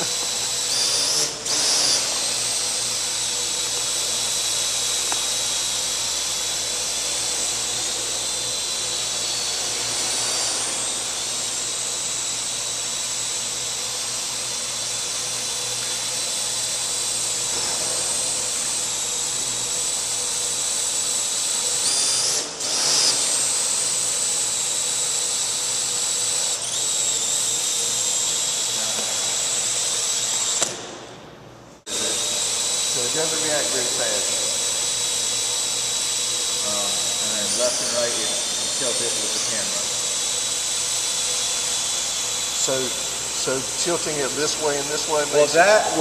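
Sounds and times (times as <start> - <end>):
quadcopter rotors whining: 0.0 - 31.2, 31.9 - 46.0.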